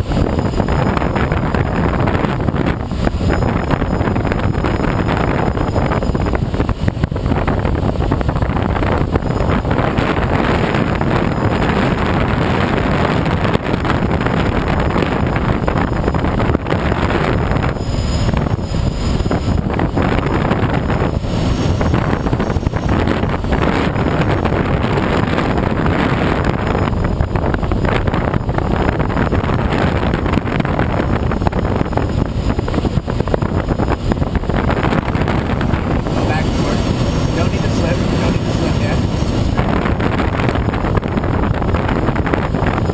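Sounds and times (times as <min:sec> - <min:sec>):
air rushing past glider: 0:00.0 - 0:42.9
wind buffeting microphone: 0:00.0 - 0:42.9.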